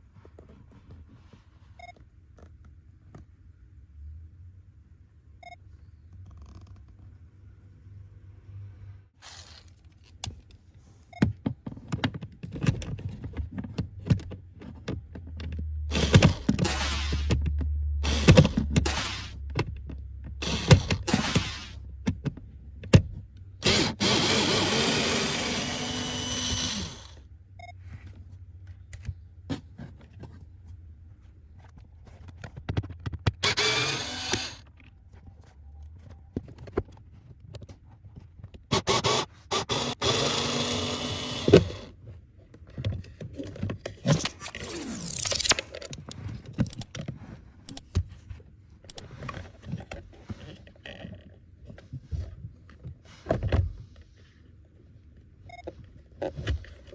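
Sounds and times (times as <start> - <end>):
clunks and scrapes of parts: 27.8 - 39.0, 41.7 - 54.6.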